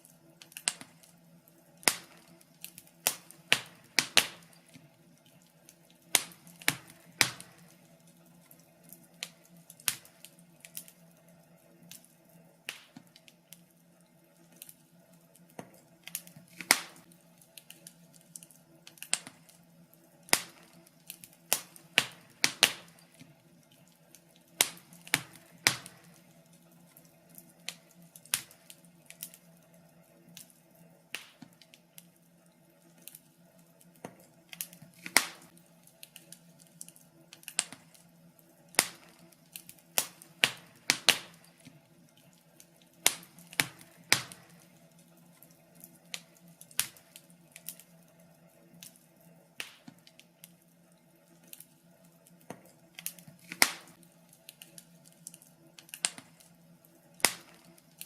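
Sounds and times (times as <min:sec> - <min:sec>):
faint steady hum: 0:00.0 - 0:58.0
wood fire crackling: 0:00.0 - 0:58.0.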